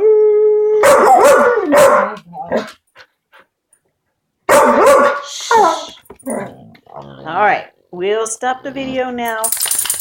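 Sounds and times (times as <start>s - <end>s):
dog yowling barks: 0.8s - 2.7s, 4.5s - 6.5s.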